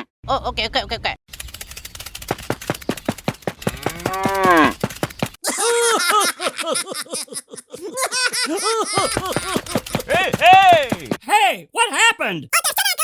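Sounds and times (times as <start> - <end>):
rapid ticking: 1.3 - 5.4, 8.9 - 11.2
cattle mooing: 3.7 - 4.8.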